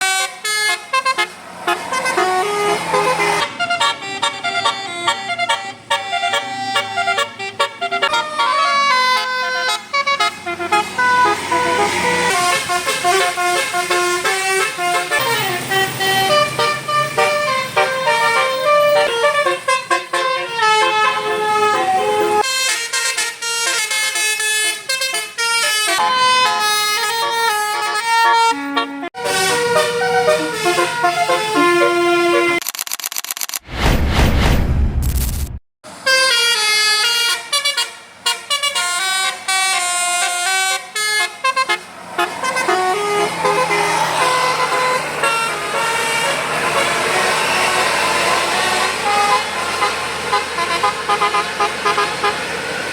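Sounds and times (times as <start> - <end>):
musical bus horn playing tunes: 0.0 - 32.6, 35.9 - 52.9.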